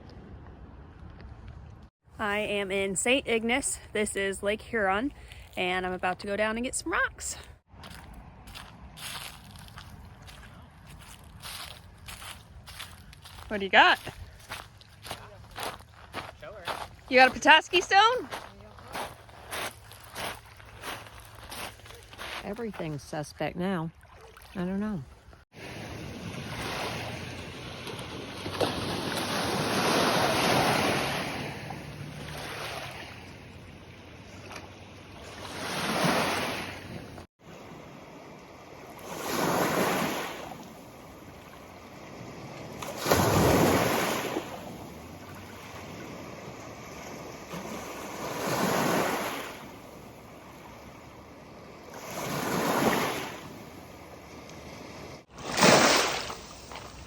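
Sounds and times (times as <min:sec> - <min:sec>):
waves washing onto shore: 0:25.5 - 0:33.4, 0:35.3 - 0:57.0.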